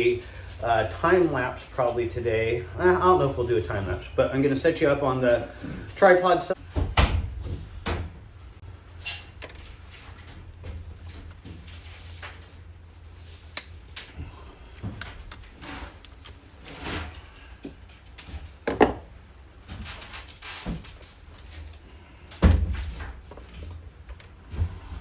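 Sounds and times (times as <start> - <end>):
steady low hum: 0.0 - 20.0
tools knocking and rustling: 17.6 - 19.1.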